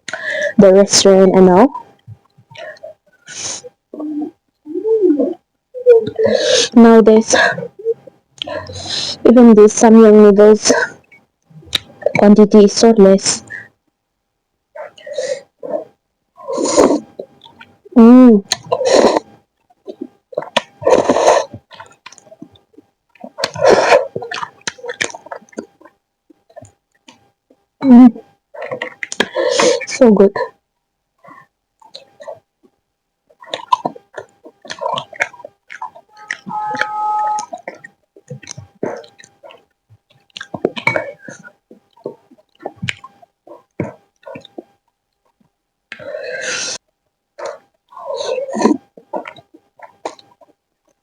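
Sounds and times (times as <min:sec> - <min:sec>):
wet chewing clicks: 0:20.0 - 0:27.6, 0:33.3 - 0:36.5, 0:37.4 - 0:46.1, 0:48.6 - 0:51.0.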